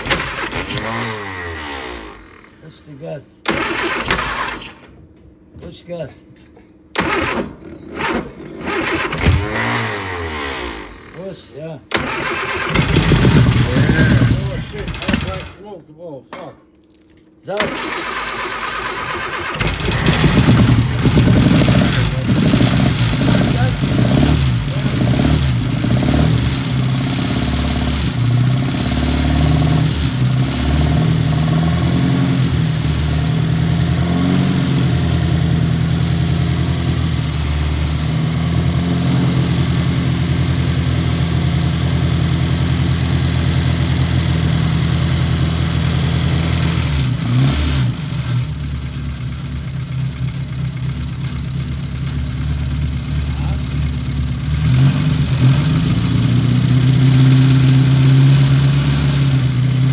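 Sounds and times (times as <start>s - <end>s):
car engine revving and idling: 0.0s - 2.6s, 6.9s - 11.2s, 11.9s - 15.6s, 17.6s - 59.9s.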